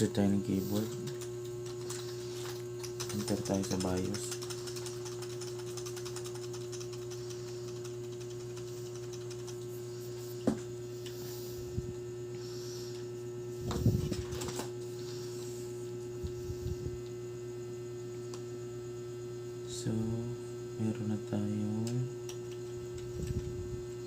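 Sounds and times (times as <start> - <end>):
electrical mains hum: 0.0 - 24.0.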